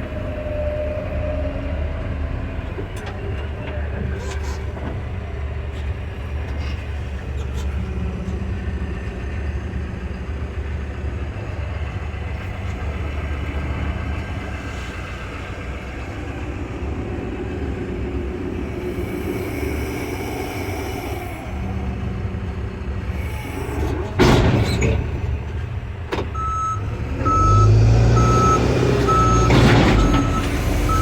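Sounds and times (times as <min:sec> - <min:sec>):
diesel engine running: 0:00.0 - 0:31.0
high whine and hiss: 0:17.1 - 0:23.8.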